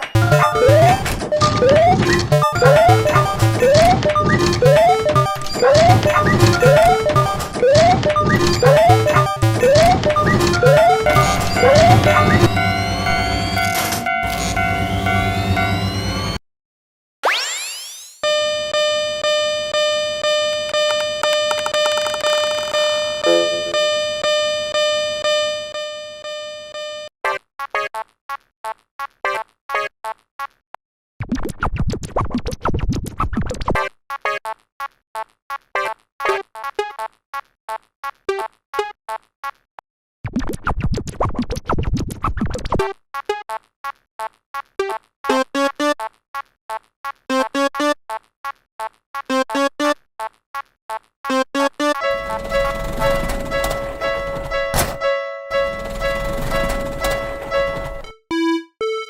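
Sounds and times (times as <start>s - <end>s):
fast run of synth notes: 0.0s - 16.4s, 23.2s - 24.1s, 52.0s - 54.6s, 55.5s - 58.0s
pulsing ringing tone: 0.2s - 16.4s, 22.8s - 25.9s.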